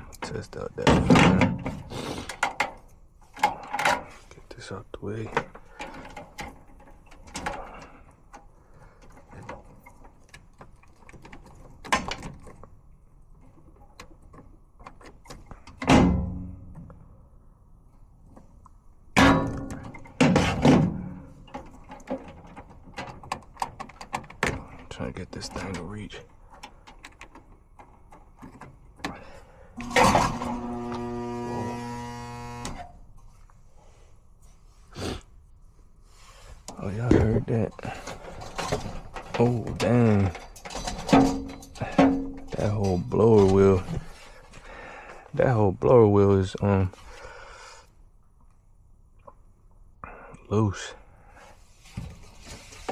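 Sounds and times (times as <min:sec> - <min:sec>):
hands working on machine parts: 0:00.0 - 0:17.1, 0:18.0 - 0:33.6
furnace blower humming drone: 0:29.8 - 0:32.8.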